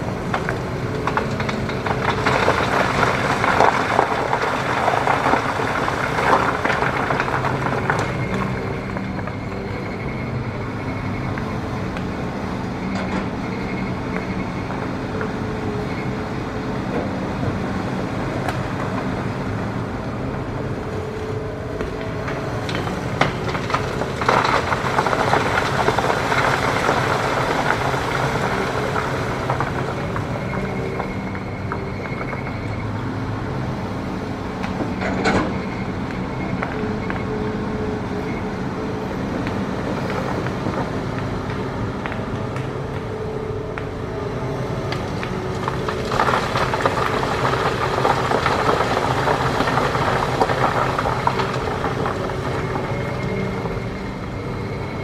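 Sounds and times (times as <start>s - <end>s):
excavator diesel engine running: 0.0s - 55.0s.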